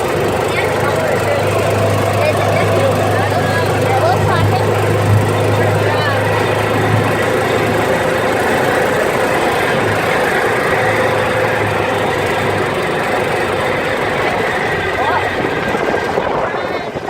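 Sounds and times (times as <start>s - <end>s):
off-road vehicle engine droning: 0.0s - 17.0s.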